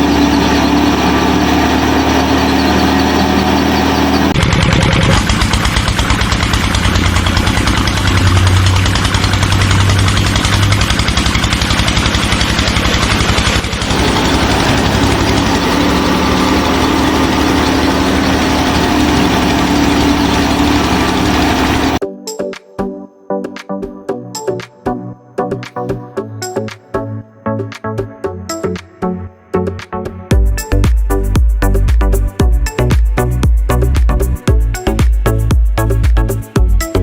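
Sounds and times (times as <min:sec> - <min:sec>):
tractor engine idling: 0:00.0 - 0:22.0.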